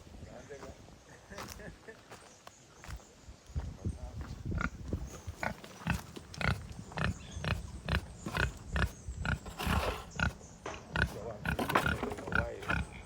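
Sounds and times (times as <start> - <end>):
pigs grunting: 4.4 - 13.0.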